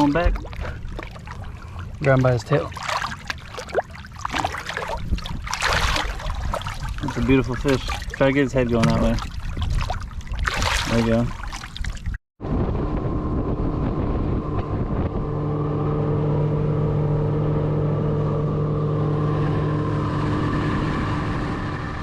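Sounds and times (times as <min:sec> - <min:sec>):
outboard motor running: 0:00.0 - 0:12.0, 0:12.7 - 0:22.0
wind and water rushing: 0:00.0 - 0:12.6.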